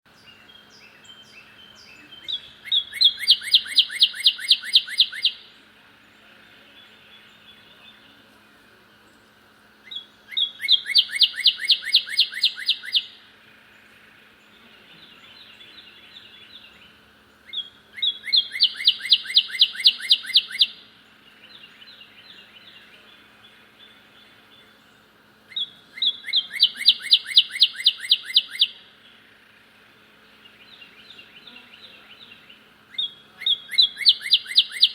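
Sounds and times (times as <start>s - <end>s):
faint bird chirping: 0.1s - 34.9s
bird singing whistles and runs: 33.0s - 34.9s.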